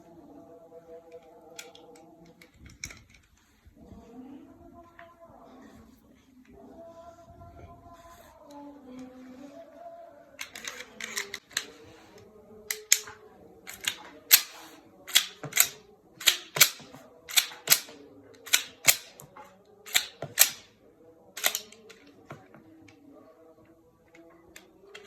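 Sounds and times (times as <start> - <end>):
metallic pistol clicks: 1.1 - 3.2, 10.4 - 11.7, 12.7 - 20.8, 21.4 - 23.0.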